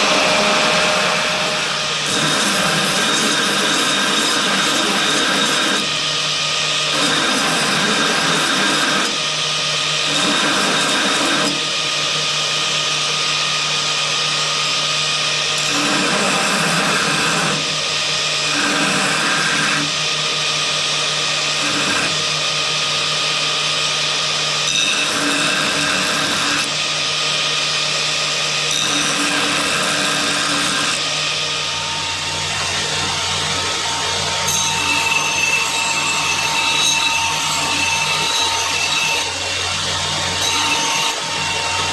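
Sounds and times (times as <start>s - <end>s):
grinder rasping on metal: 0.0s - 9.2s, 10.0s - 11.6s, 15.6s - 17.6s, 18.3s - 20.0s, 20.8s - 23.2s, 24.5s - 26.9s, 28.7s - 41.9s
electric grinder motor whine: 0.0s - 41.9s.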